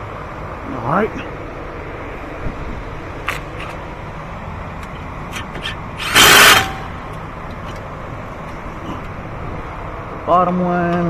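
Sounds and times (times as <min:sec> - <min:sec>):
power tool driving bolt: 0:05.4 - 0:07.2.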